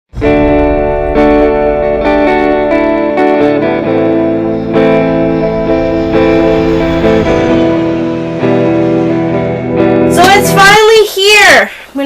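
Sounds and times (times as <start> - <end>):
sustained guitar chords: 0.1 - 11.0.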